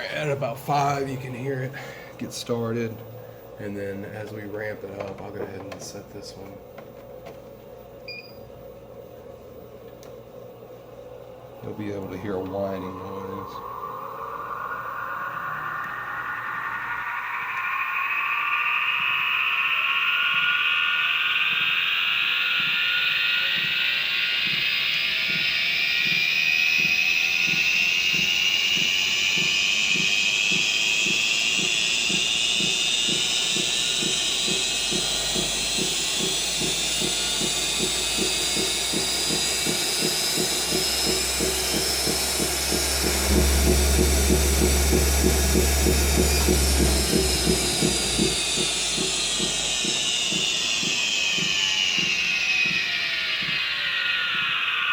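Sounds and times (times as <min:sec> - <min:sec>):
treadmill motor whining: 0:00.0 - 0:54.9
regular low beat: 0:31.0 - 0:51.5.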